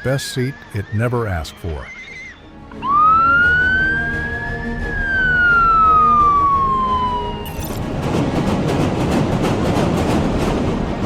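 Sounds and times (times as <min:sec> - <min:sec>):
siren wailing: 0:02.8 - 0:07.8.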